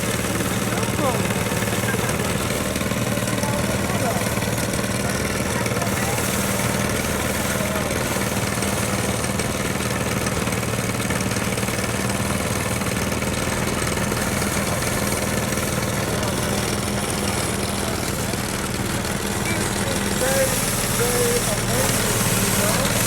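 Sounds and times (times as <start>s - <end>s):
small engine running steadily: 0.0s - 23.0s.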